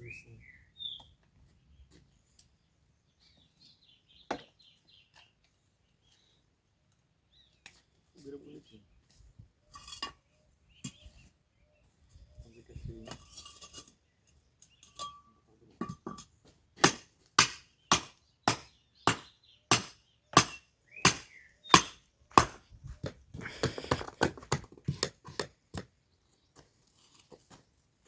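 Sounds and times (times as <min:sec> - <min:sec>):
sharp hammering blows: 0:16.8 - 0:22.6.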